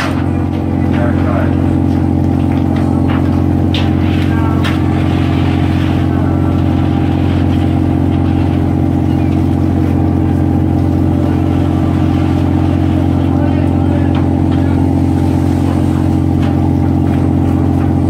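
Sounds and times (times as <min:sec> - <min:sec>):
large engine droning: 0:00.0 - 0:18.0.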